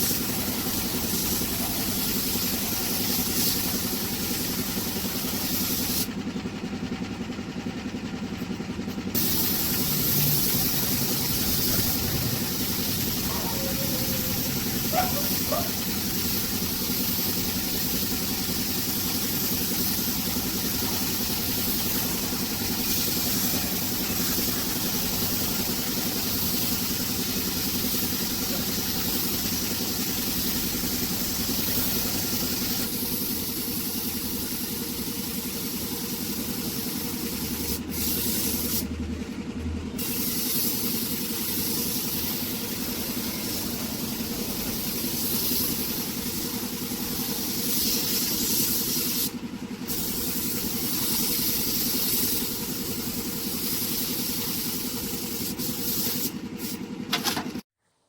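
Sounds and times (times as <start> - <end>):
spray gun hissing: 0.0 - 6.1, 9.1 - 38.9, 40.0 - 56.9
machine running: 8.8 - 37.9, 40.8 - 57.4.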